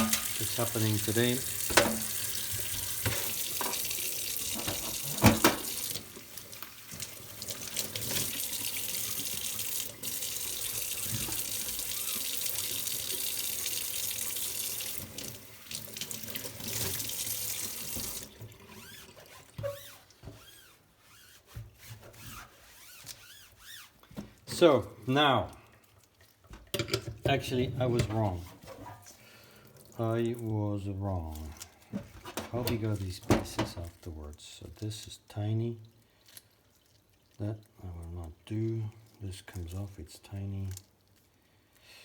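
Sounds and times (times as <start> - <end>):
tap running into a sink: 0.0 - 6.1, 6.9 - 18.4.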